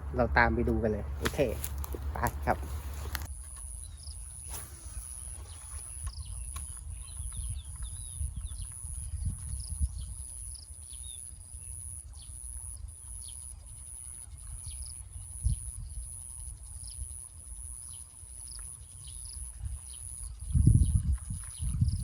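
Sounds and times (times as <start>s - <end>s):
steady high buzz: 0.0s - 7.0s
dull thump: 1.2s - 3.3s.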